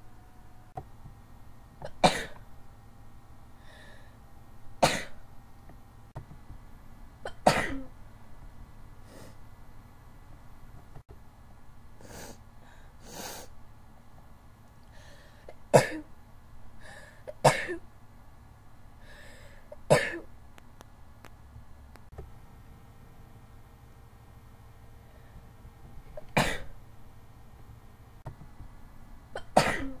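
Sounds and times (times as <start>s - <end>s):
breathy inhale: 3.6s - 4.2s, 12.0s - 13.5s, 14.8s - 15.6s, 16.8s - 17.3s, 19.0s - 19.7s, 25.0s - 25.5s.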